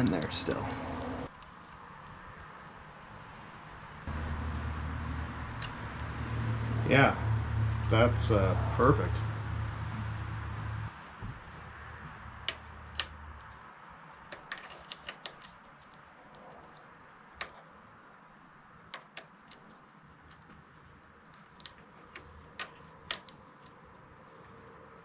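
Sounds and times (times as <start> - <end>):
small metal and plastic parts clicking: 12.4 - 17.7, 18.8 - 24.0.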